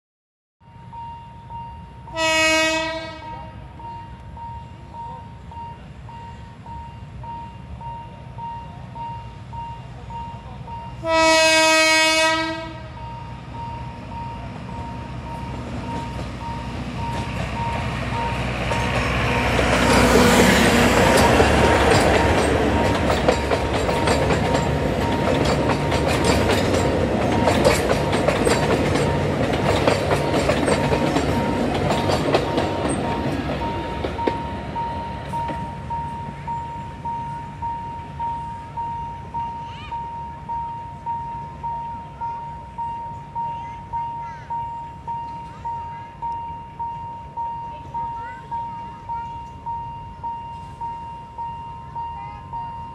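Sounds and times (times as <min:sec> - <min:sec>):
train engine hum: 0:00.6 - 0:52.9
train horn blasts: 0:02.0 - 0:03.7, 0:10.9 - 0:13.3
level-crossing bell dinging: 0:03.3 - 0:11.0, 0:12.9 - 0:52.9
wheels clicking over rail joints: 0:15.4 - 0:37.2.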